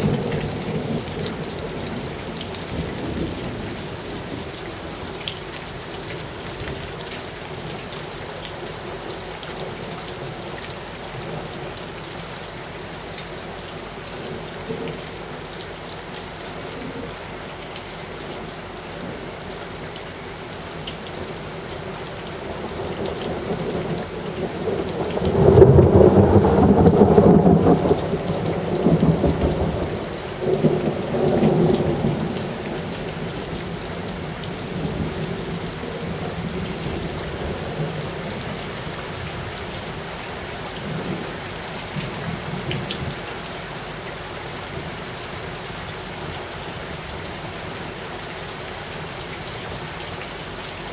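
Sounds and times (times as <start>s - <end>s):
steady rain falling: 0.0s - 50.9s
thunder rolling: 24.5s - 32.6s.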